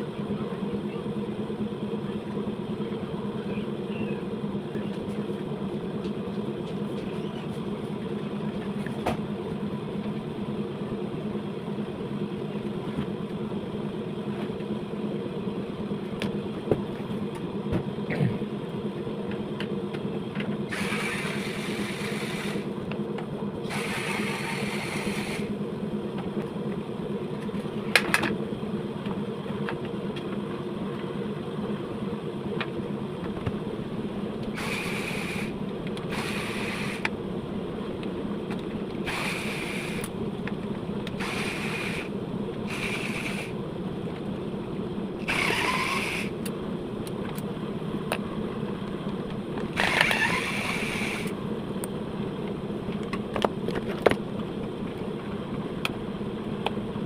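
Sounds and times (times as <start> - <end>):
motor humming: 0.0 - 57.0
hissing bursts: 34.5 - 35.5, 39.0 - 40.1.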